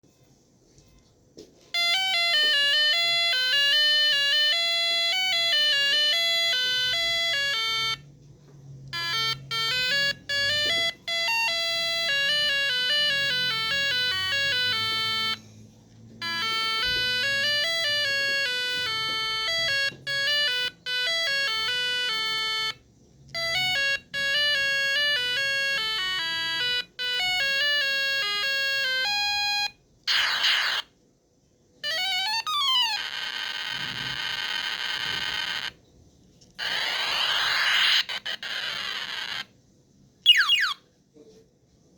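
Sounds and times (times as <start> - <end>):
electronic beeping tunes: 1.8 - 8.1, 9.0 - 15.4, 16.2 - 22.8, 40.3 - 40.8.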